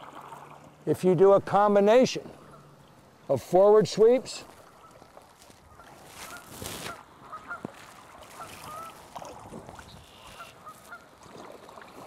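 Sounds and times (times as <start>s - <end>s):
paddle splashing water: 0.0s - 0.8s, 4.2s - 12.0s
geese honking: 8.4s - 9.0s, 10.0s - 11.1s.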